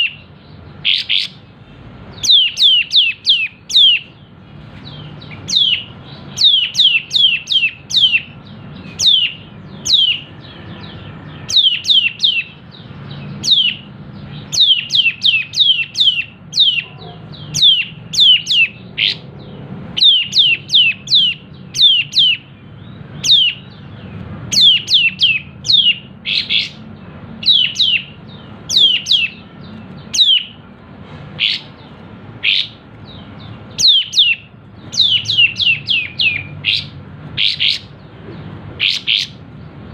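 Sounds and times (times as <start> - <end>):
bulbul calling sharp notes: 2.1 - 4.3, 24.5 - 30.7, 31.3 - 38.0.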